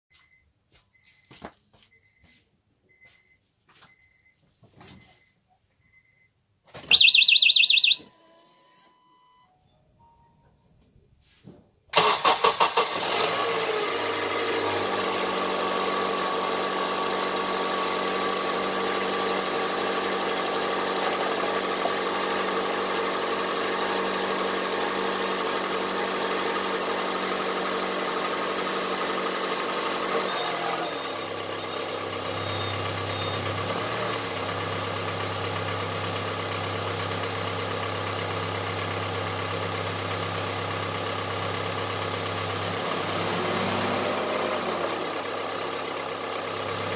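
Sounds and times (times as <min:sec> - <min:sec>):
car engine cranking and idling: 0:11.9 - 0:46.9.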